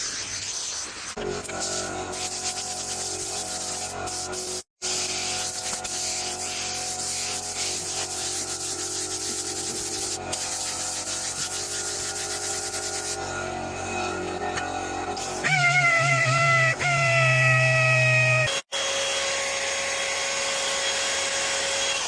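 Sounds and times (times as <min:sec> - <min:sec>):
sanding car body panel: 0:00.1 - 0:13.2.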